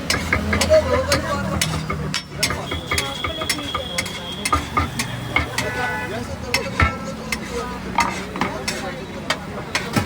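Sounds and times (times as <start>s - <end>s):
metal spatula scraping iron griddle: 6.5s - 9.0s.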